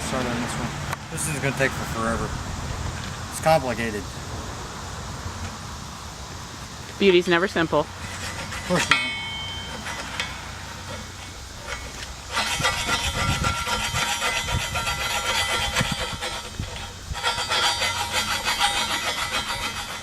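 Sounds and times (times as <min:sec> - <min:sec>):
hand file rasping on metal: 0:08.0 - 0:20.0.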